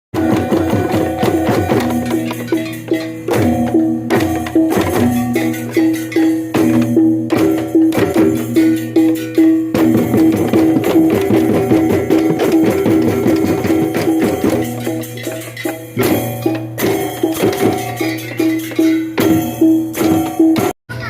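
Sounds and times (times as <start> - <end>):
bamboo slit drums struck: 0.2 - 15.0
bright jingling: 0.8 - 20.7.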